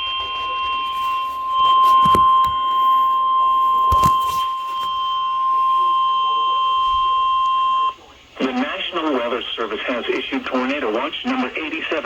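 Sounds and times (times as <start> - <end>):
steady alarm beep: 0.0 - 8.0.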